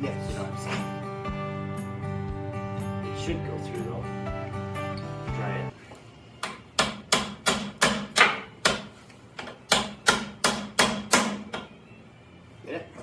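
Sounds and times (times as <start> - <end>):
hammer striking metal: 6.4 - 8.9, 9.7 - 11.7.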